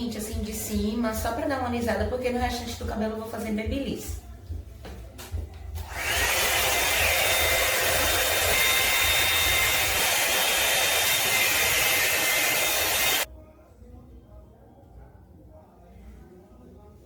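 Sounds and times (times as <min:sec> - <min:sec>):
hot-air hair brush blowing: 0:05.8 - 0:13.3.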